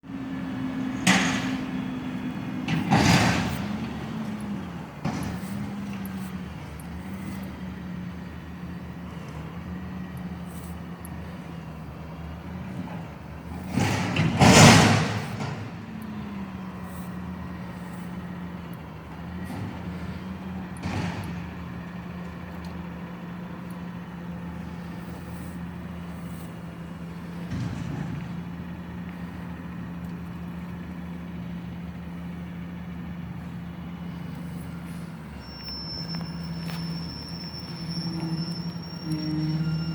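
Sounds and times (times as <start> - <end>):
garbage truck engine running: 0.0 - 39.9
loud metal clanks: 13.6 - 15.8.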